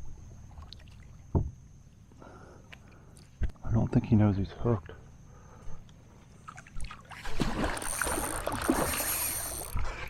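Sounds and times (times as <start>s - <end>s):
water splashing beside kayak: 6.4s - 10.0s.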